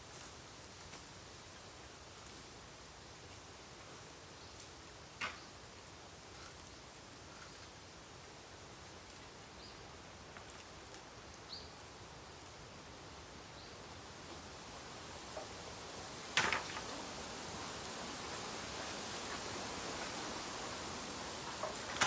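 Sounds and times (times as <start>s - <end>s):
bonfire hissing and crackling: 5.7s - 22.0s.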